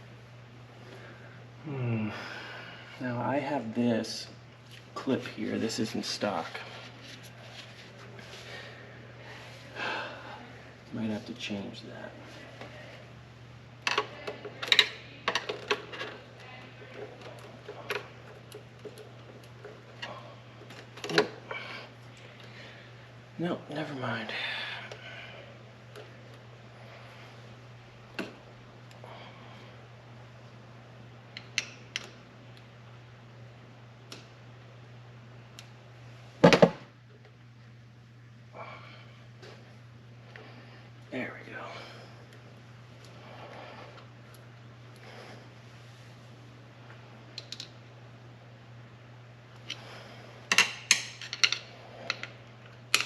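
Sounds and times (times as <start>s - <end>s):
steady low hum: 0.0s - 53.0s
clicks and taps of small parts: 47.4s - 47.7s.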